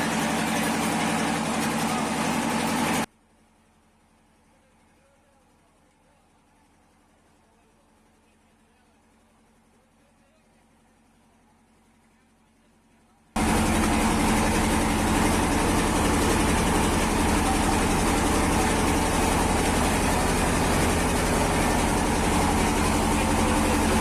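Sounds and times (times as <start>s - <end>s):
boat engine droning: 13.4s - 24.0s.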